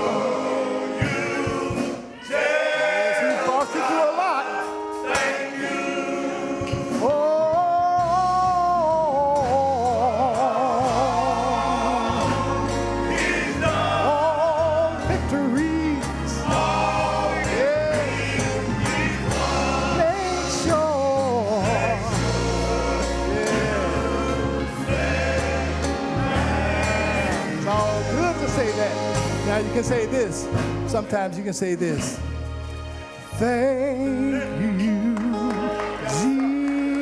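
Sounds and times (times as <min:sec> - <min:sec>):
band accompaniment: 0:00.0 - 0:37.0
gospel choir singing: 0:00.0 - 0:37.0
bass line: 0:08.0 - 0:31.1.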